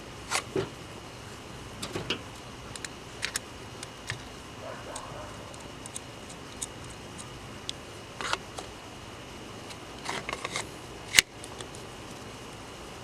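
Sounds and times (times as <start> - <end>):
clicks and rustles of handling: 1.8 - 8.8, 9.6 - 12.3.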